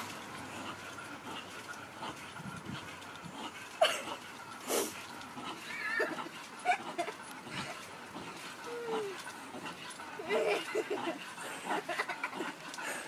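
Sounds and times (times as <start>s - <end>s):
dog whimpering and yipping: 5.6s - 7.2s, 8.6s - 9.3s.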